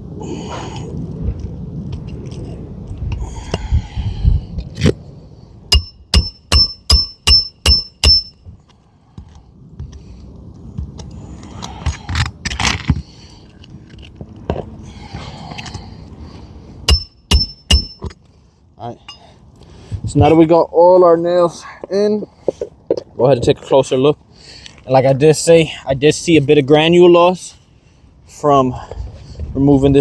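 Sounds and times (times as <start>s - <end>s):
hammer striking nail: 5.7s - 8.4s, 16.9s - 18.1s.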